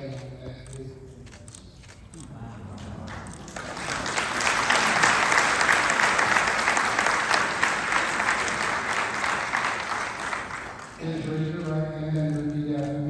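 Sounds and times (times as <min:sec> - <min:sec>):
audience applauding: 0:02.8 - 0:11.7.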